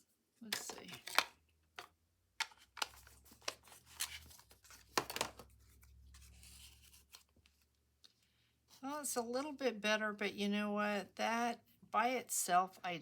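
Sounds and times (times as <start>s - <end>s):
paper rustling and crinkling: 2.5s - 7.7s.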